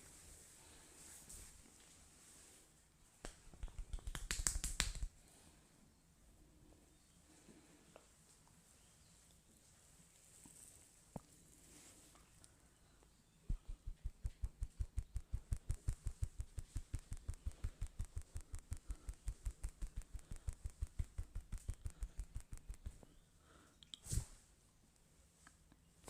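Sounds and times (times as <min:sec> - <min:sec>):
massage gun dull thumps: 0:13.5 - 0:23.0.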